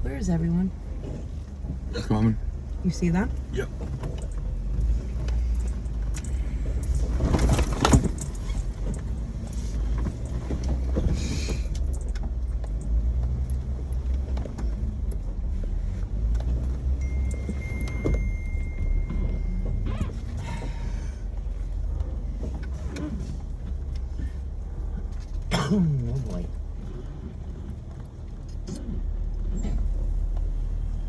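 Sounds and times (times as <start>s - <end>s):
engine and drivetrain rumble: 0.0s - 31.0s
knocks and rattles: 5.6s - 12.9s.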